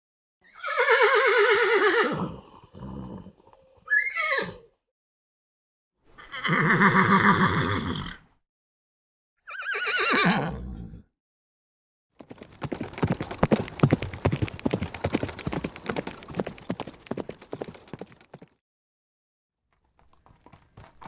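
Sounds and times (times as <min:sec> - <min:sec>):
horse whinnying: 0:00.4 - 0:04.7, 0:06.2 - 0:08.2, 0:09.4 - 0:11.0
horse hooves clopping: 0:12.2 - 0:18.6, 0:19.7 - 0:21.0.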